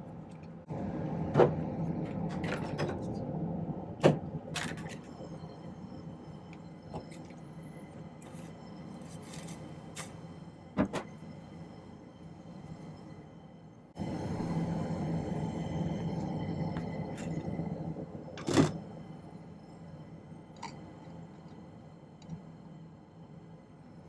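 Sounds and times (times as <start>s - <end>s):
quiet sustained music tones: 4.6s - 24.0s.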